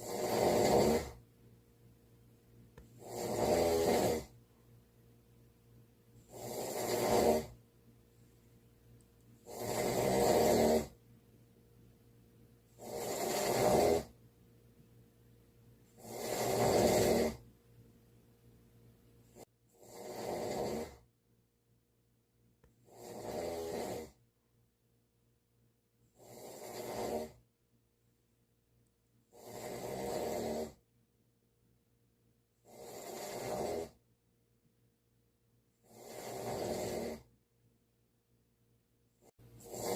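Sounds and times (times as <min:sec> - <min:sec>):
person snoring: 0:00.0 - 0:01.2, 0:02.8 - 0:04.4, 0:06.2 - 0:07.6, 0:09.4 - 0:11.0, 0:12.7 - 0:14.2, 0:15.9 - 0:17.4, 0:19.3 - 0:21.1, 0:22.8 - 0:24.2, 0:26.1 - 0:27.4, 0:29.3 - 0:30.8, 0:32.6 - 0:34.0, 0:35.8 - 0:37.3, 0:39.2 - 0:39.9.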